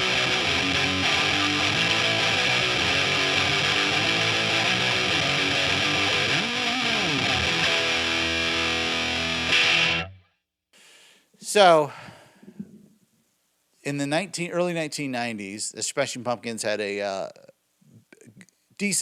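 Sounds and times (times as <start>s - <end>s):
fuzzed electric guitar riff: 0.0s - 10.3s.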